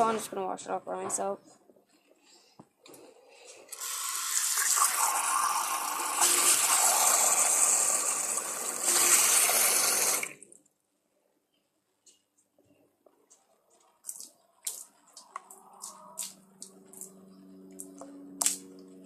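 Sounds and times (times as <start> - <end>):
water running from a tap: 3.7 - 10.4.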